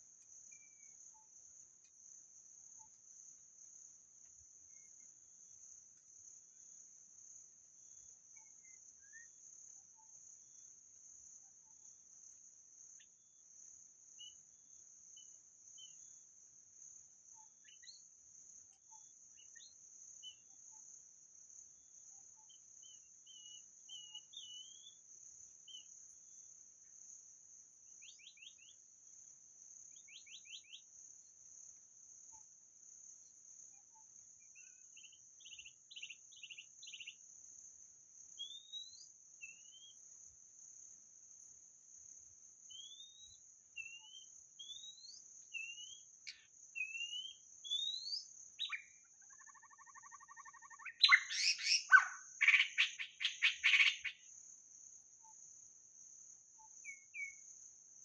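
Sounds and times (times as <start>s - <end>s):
bird whistling song: 42.7s - 54.2s.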